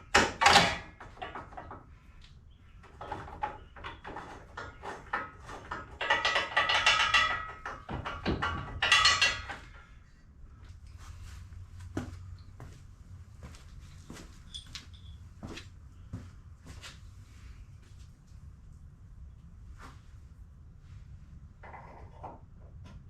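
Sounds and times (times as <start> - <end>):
hand tools clicking and knocking: 0.1 - 1.8, 3.0 - 9.8
metallic ringing clatter: 5.4 - 9.9, 14.4 - 15.2.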